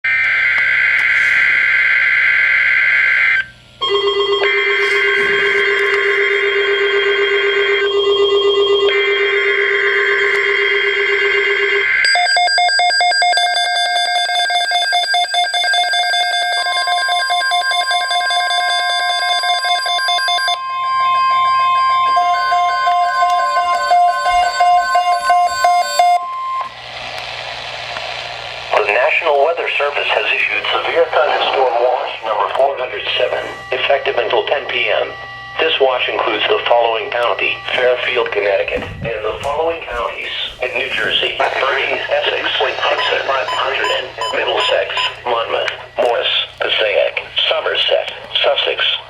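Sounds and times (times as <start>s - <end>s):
steady high alert tone: 16.9s - 26.7s, 30.1s - 45.6s
rapid pulsing electronic tone: 35.6s - 45.2s
screeching digital data tones: 41.2s - 45.4s.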